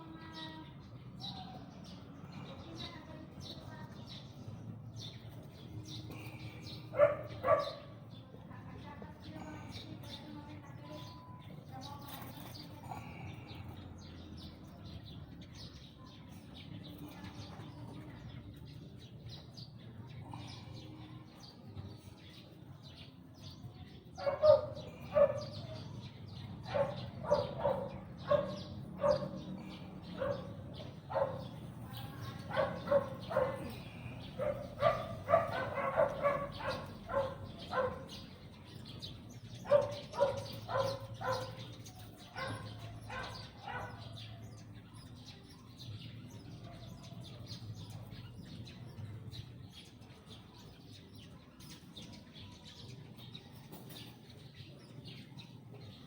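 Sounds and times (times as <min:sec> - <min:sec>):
dog barking: 0:06.9 - 0:08.0, 0:24.2 - 0:25.6, 0:26.6 - 0:29.5, 0:30.2 - 0:31.6, 0:32.4 - 0:38.3, 0:39.6 - 0:41.7, 0:42.3 - 0:44.2.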